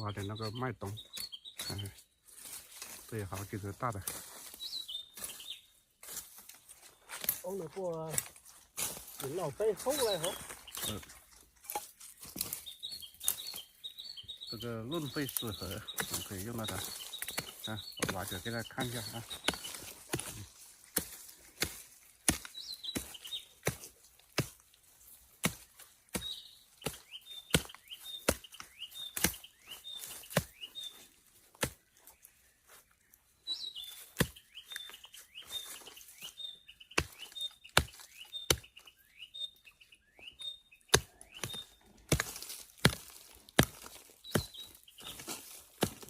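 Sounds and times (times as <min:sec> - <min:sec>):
bird chirping high calls: 0:00.0 - 0:02.5, 0:04.4 - 0:05.7, 0:09.2 - 0:11.2, 0:12.2 - 0:20.6, 0:22.4 - 0:23.6, 0:26.2 - 0:31.1, 0:33.1 - 0:42.0, 0:44.2 - 0:45.6
digging tool chopping into soil: 0:16.0 - 0:24.6, 0:25.4 - 0:30.6, 0:31.5 - 0:31.8, 0:34.0 - 0:34.9, 0:37.0 - 0:38.7, 0:40.9 - 0:46.0.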